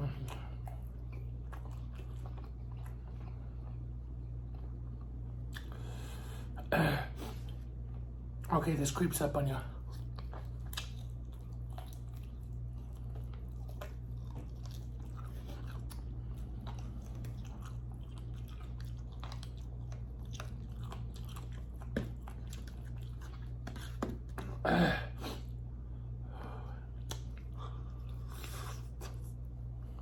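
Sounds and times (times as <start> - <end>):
chewing and biting food: 0.0 - 5.9, 9.8 - 24.6, 26.8 - 30.0.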